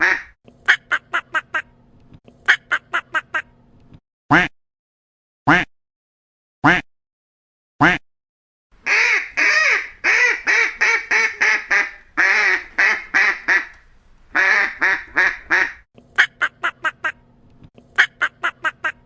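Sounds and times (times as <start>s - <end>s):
duck quacking: 0.0s - 0.3s, 8.8s - 15.8s.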